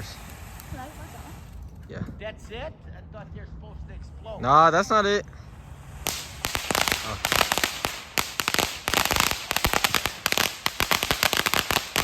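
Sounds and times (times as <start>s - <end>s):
firecrackers popping: 0.0s - 1.8s, 5.5s - 12.0s.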